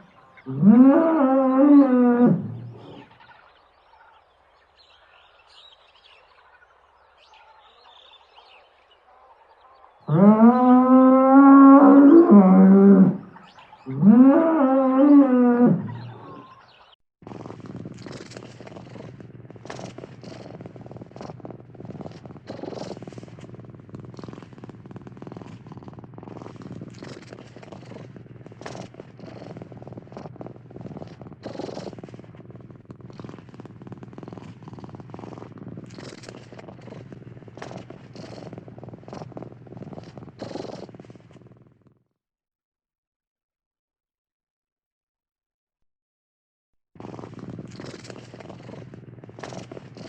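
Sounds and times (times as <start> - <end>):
cat purring: 0.0 - 0.7, 2.1 - 3.2, 17.2 - 42.1, 47.0 - 50.0.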